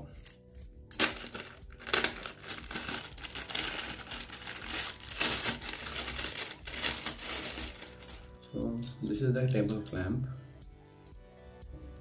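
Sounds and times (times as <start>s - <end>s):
packaging crinkling and rustling: 0.2s - 8.4s.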